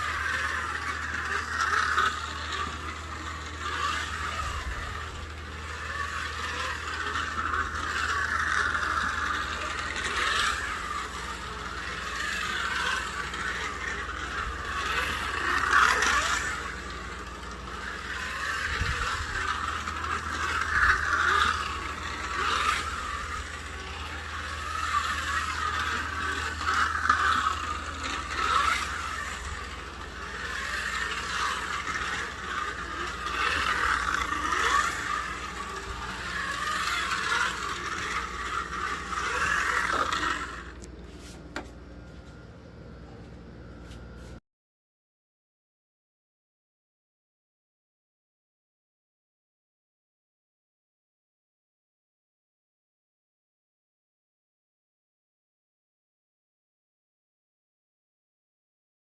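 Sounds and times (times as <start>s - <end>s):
slot car scraping and clicking: 0.0s - 41.6s
slot car motor whirring: 0.0s - 44.4s.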